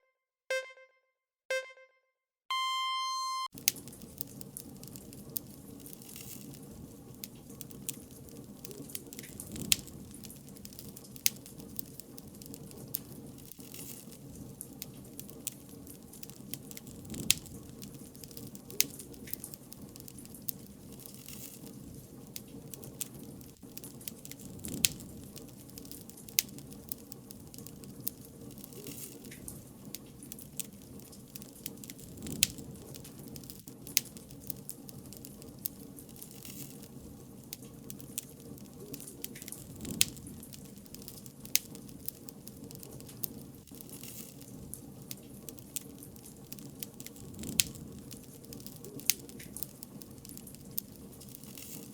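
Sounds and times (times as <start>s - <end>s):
electronic countdown beeps: 0.5s - 3.5s
bonfire crackling and popping: 3.5s - 51.9s.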